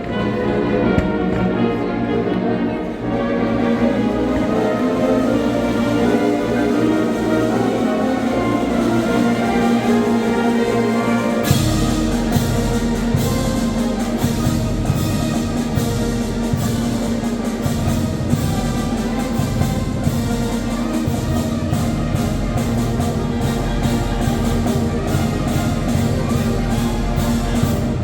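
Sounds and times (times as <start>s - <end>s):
brass and woodwind chords: 0.0s - 28.0s
steady percussion beat: 3.7s - 28.0s
drum and cymbal strokes: 11.4s - 28.0s.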